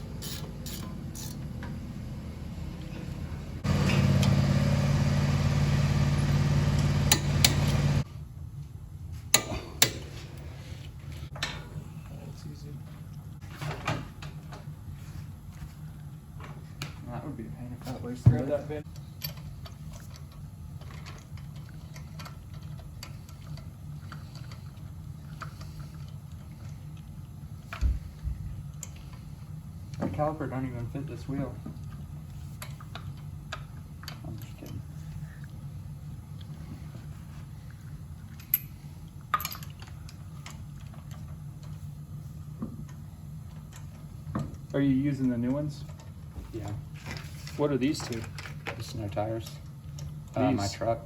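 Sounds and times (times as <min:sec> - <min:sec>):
steady low hum: 0:00.0 - 0:51.0
clicks and taps of tools: 0:06.8 - 0:07.7.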